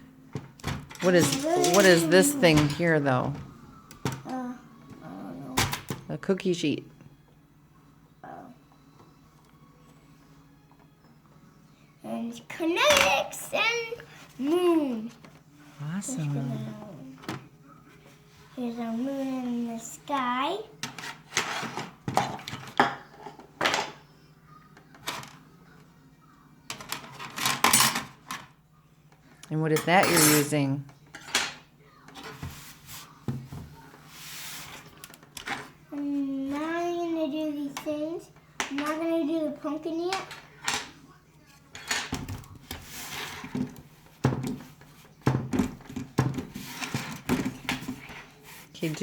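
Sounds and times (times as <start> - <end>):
toys clattering on metal tray: 0.7 - 3.2, 12.8 - 13.2, 26.7 - 28.5, 29.8 - 31.6, 41.7 - 42.4.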